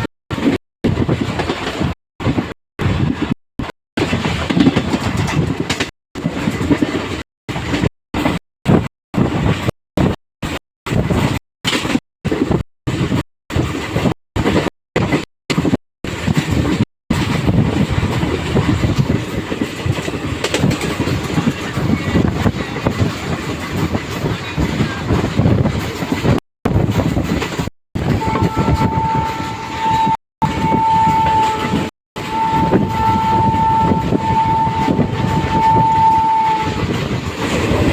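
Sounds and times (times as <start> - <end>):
train wheels rumbling on rails: 0.0 - 37.9
train horn blasts: 28.0 - 37.0.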